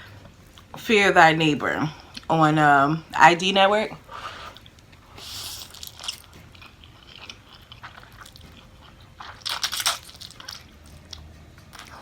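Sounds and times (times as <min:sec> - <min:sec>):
crunchy biting and chewing: 0:04.5 - 0:12.0.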